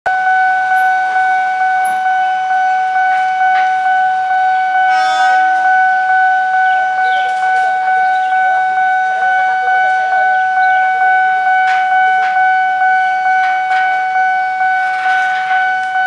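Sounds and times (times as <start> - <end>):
railroad crossing bell ringing: 0.1 - 16.0
train horn blast: 4.8 - 5.8, 14.7 - 15.9.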